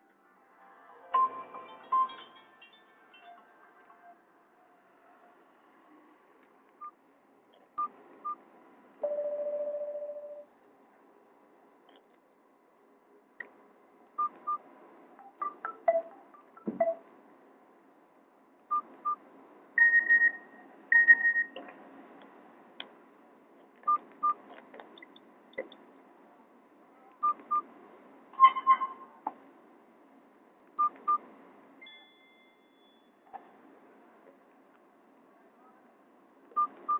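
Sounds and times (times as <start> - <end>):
phone ringtone beeps: 9.0 - 10.4.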